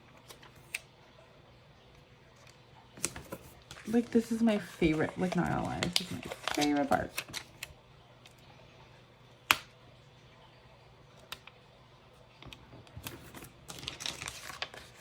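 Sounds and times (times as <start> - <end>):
paper rustling: 3.0 - 7.7, 12.9 - 15.0.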